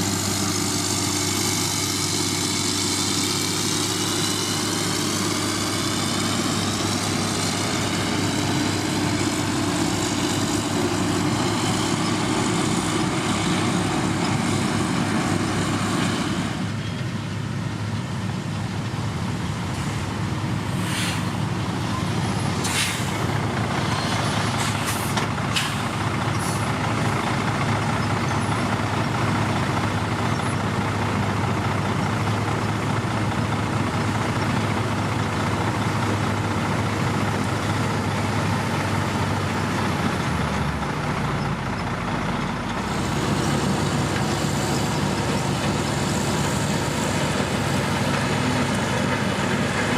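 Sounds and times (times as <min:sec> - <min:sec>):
diesel machinery running: 0:00.0 - 0:49.9
short hisses: 0:20.7 - 0:21.4, 0:22.6 - 0:23.2, 0:24.5 - 0:26.6.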